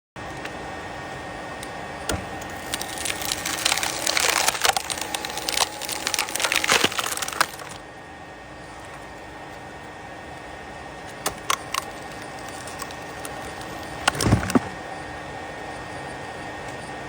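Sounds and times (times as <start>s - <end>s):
steady background hum: 0.2s - 17.0s
wood cracking and splintering: 2.1s - 7.8s, 11.0s - 14.9s.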